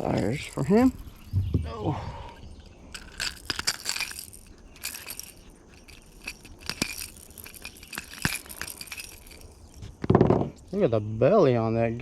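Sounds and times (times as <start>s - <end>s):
pliers and hooks clinking: 0.0s - 1.3s, 2.6s - 10.8s.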